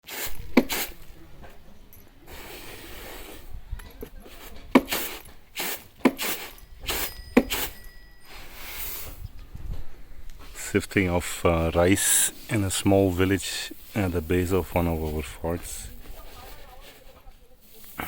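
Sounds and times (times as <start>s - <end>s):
rice threshing thuds: 0.0s - 1.2s, 4.2s - 9.2s, 10.4s - 18.0s
rustling of grain and straw: 0.0s - 18.0s.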